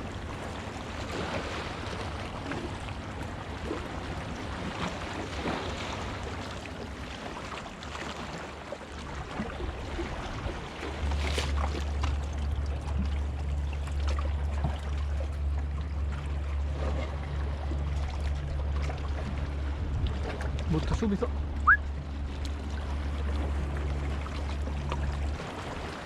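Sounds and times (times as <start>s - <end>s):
sea washing against rocks: 0.0s - 12.0s, 25.3s - 26.0s.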